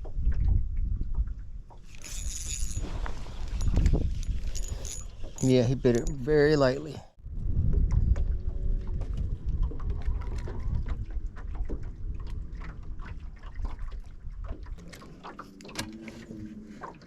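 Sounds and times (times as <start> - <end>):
water sloshing against hull: 0.0 - 6.0, 7.2 - 17.0
low rumble: 7.2 - 14.7.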